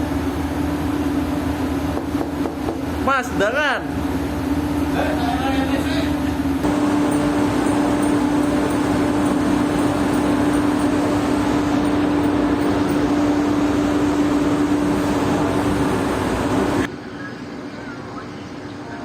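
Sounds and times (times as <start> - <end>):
constant low hum: 3.9 - 19.0
loud steady rushing noise: 6.6 - 17.0.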